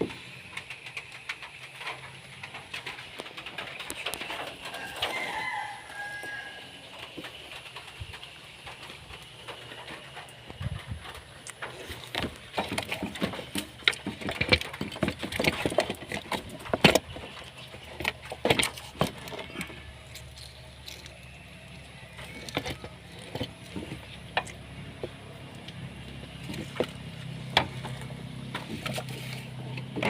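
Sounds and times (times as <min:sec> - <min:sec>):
tools and car parts clattering: 0:08.8 - 0:30.0.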